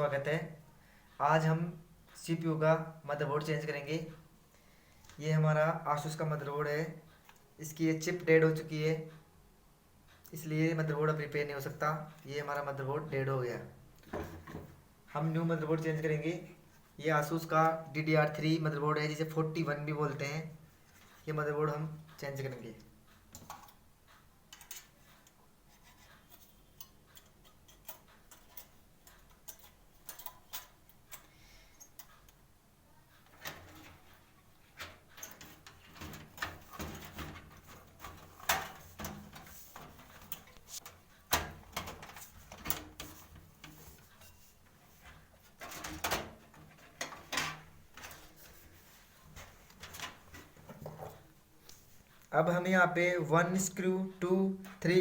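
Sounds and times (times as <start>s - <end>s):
computer hardware clicks and knocks: 23.3s - 23.9s, 24.5s - 32.4s, 33.2s - 48.5s.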